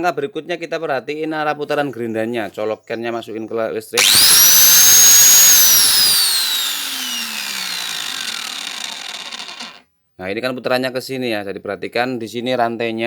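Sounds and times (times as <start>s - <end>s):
angle grinder whining: 4.0s - 9.8s.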